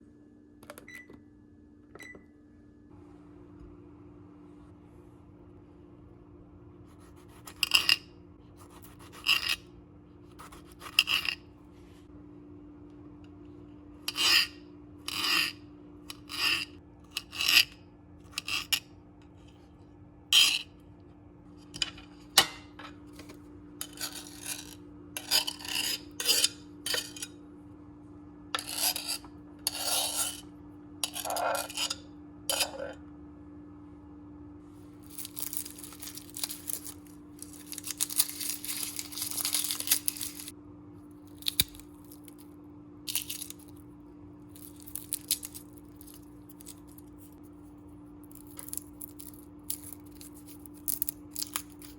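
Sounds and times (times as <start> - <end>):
steady low hum: 0.0 - 51.9
food scraping and rubbing: 6.8 - 9.7, 10.3 - 12.0, 14.0 - 20.8, 23.0 - 27.4, 28.5 - 33.0, 34.8 - 40.6, 41.2 - 42.5, 43.1 - 43.8, 44.5 - 51.9
dishes and utensils handled: 21.6 - 27.4, 31.0 - 33.0, 35.1 - 40.5
scraping and rustling: 35.0 - 40.5.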